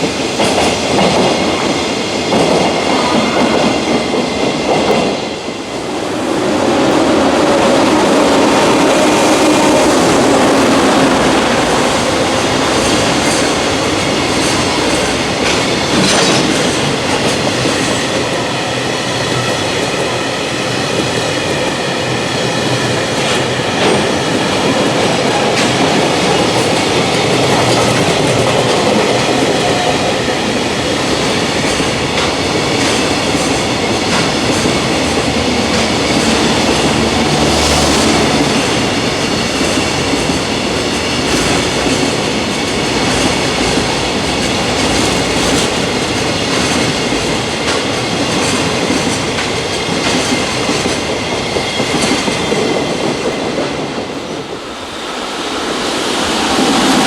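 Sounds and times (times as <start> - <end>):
freight train rolling past: 0.0 - 57.0.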